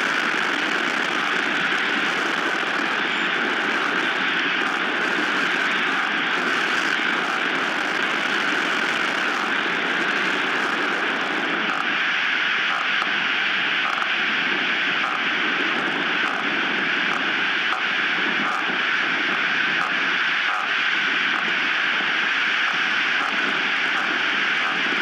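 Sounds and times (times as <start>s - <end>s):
strong wind on microphone: 0.0s - 12.0s.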